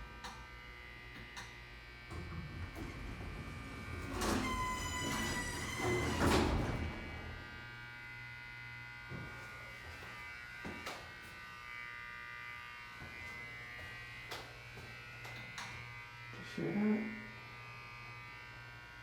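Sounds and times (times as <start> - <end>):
elevator electrical buzzing hum: 0.0 - 19.0
relay clicking: 2.1 - 7.4.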